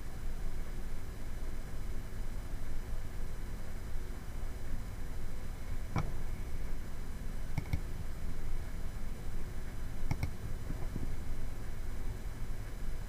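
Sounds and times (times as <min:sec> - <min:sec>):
low hiss and hum: 0:00.0 - 0:13.0
computer mouse clicking: 0:07.6 - 0:07.8, 0:10.1 - 0:10.4.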